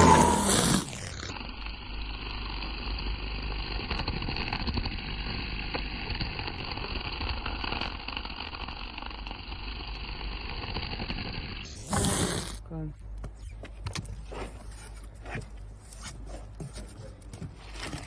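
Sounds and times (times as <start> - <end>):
cordless garden tool whirring: 0.0 - 12.8.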